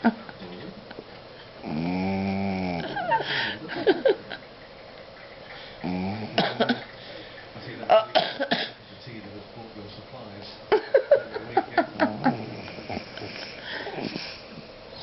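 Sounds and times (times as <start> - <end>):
dog snoring: 1.6 - 3.0, 5.8 - 6.8, 12.0 - 14.7
dog snorting: 1.6 - 3.0, 5.5 - 7.0, 12.0 - 14.8.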